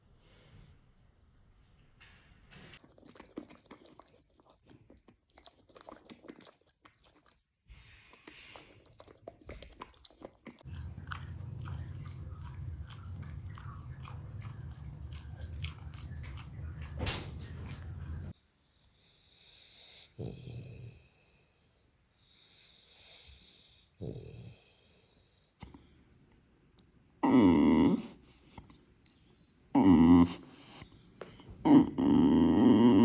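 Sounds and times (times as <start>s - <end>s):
dog chewing: 2.8s - 7.4s, 8.1s - 18.4s
steady low hum: 10.6s - 18.4s.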